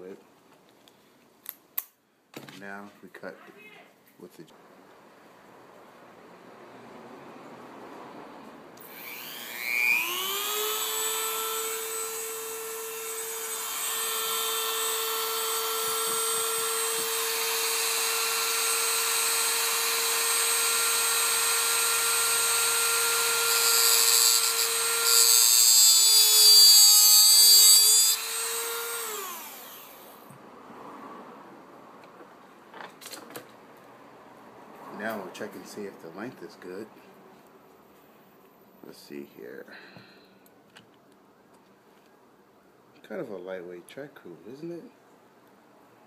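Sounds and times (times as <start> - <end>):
rotary tool cutting metal rail: 8.8 - 30.2.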